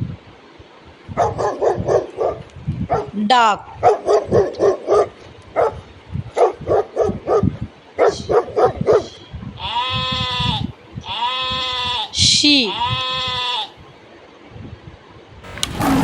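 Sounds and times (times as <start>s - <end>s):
dog barking: 1.2s - 3.2s, 3.8s - 5.8s, 6.4s - 9.1s
sheep bleating: 9.6s - 13.8s.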